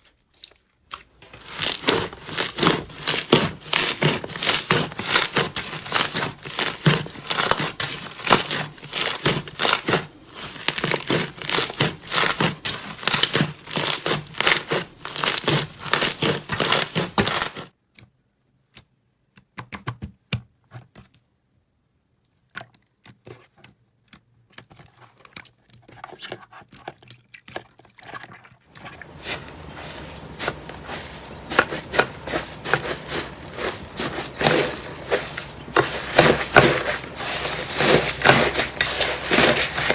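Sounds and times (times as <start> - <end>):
slime crackling and clicking: 10.6 - 17.6.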